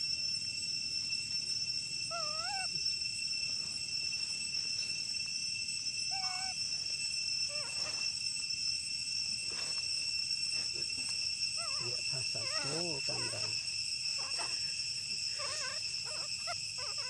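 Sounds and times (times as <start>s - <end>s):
high insect drone: 0.0s - 17.0s
monkey calling: 2.1s - 2.8s, 6.1s - 6.6s, 7.5s - 8.0s, 11.6s - 17.0s.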